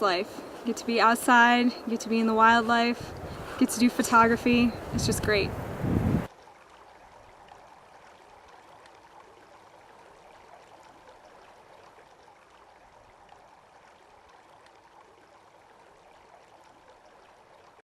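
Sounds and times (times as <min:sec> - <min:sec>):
faint rushing outdoor noise: 0:00.0 - 0:12.1.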